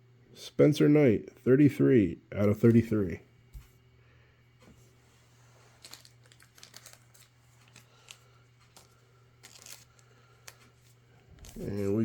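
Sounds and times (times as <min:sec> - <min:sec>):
steady low hum: 0:00.0 - 0:12.0
trading cards rustling and crinkling: 0:04.9 - 0:12.0.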